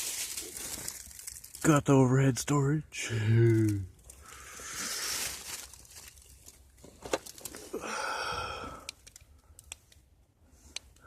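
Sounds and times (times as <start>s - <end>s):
person blowing out a breath: 7.7s - 8.9s.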